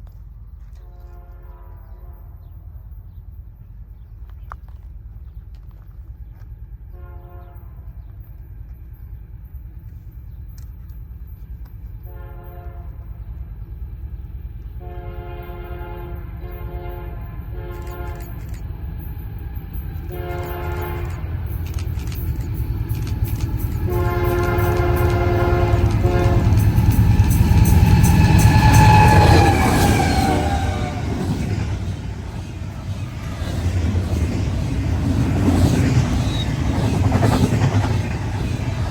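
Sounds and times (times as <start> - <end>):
train rumble: 0.0 - 38.9
locomotive air horn blasts: 0.8 - 2.5, 6.9 - 8.0, 12.0 - 13.2, 14.8 - 18.5, 20.1 - 21.6, 23.8 - 32.0.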